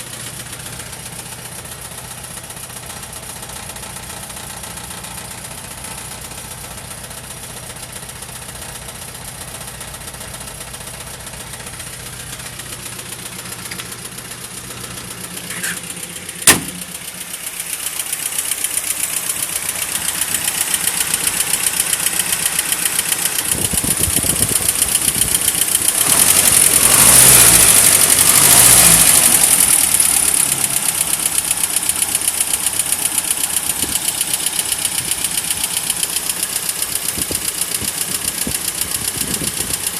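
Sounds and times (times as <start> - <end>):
car engine running: 0.0 - 39.9
sharp click: 16.5 - 16.9.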